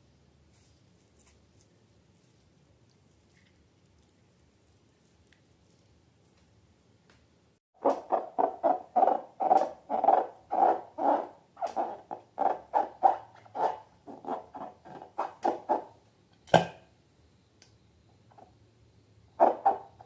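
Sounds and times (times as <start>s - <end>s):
wet slime squelches: 0.5s - 6.6s.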